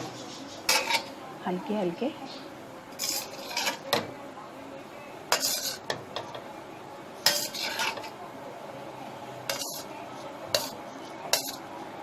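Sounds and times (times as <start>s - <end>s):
utensil scraping and clinking on pan: 0.4s - 1.2s, 2.9s - 4.1s, 5.3s - 6.4s, 7.2s - 8.2s, 9.4s - 11.7s.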